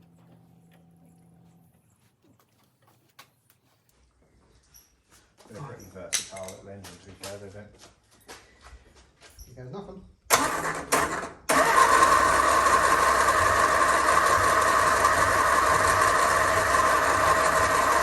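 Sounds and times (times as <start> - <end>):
starter motor bursts: 10.3 - 18.0
car engine running: 11.8 - 18.0.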